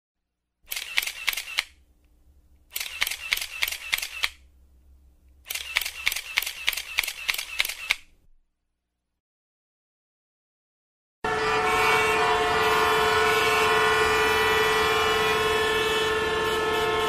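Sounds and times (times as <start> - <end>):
rapid sharp clicks: 0.7 - 1.8, 2.6 - 4.4, 5.5 - 8.1.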